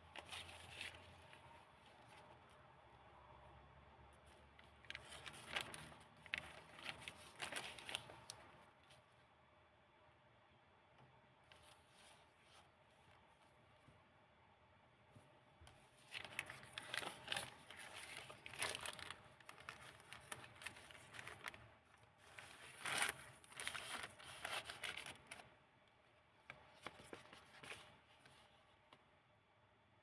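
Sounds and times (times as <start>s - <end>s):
paper pages rustling: 0.0s - 2.7s, 4.2s - 9.0s, 15.7s - 25.6s, 26.4s - 29.0s.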